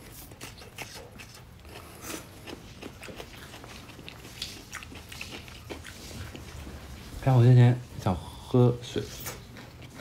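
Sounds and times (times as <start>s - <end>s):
chewing and eating clicks: 0.2s - 6.6s, 9.1s - 10.0s.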